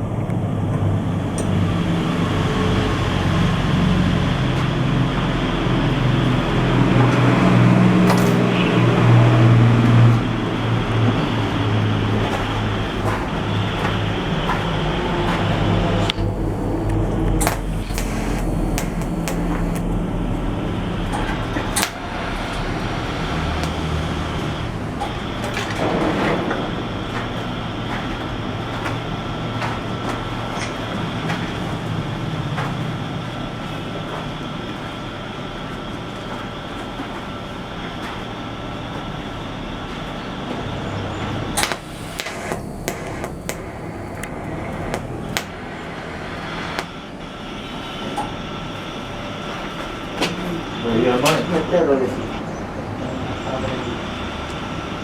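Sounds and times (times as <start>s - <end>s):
arc welding hiss: 3.0s - 52.3s
sharp clicks: 12.3s - 25.9s, 41.6s - 47.0s.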